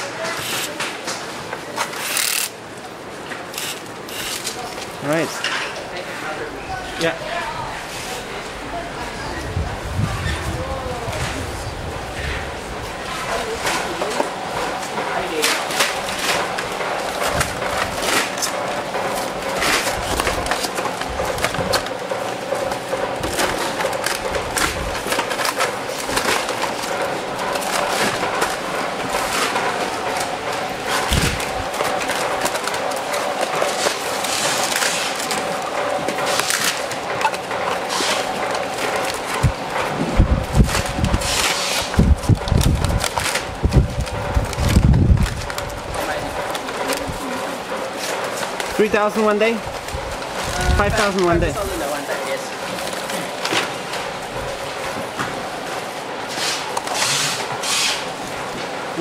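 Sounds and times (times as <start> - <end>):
steady machine hum: 0.0 - 59.0.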